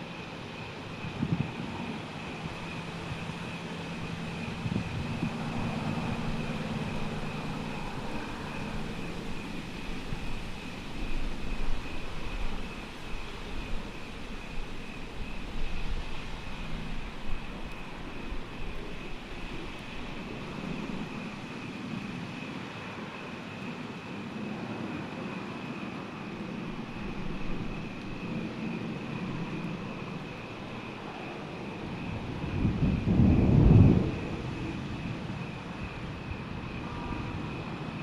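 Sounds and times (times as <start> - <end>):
distant thunder rumbling: 26.6 - 36.5.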